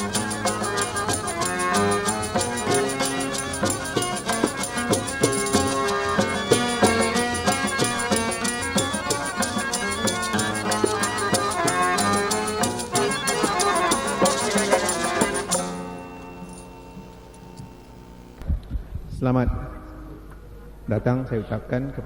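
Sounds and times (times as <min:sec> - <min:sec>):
steady percussion beat: 0:00.0 - 0:15.8
reedy harmonium lead: 0:00.0 - 0:18.4.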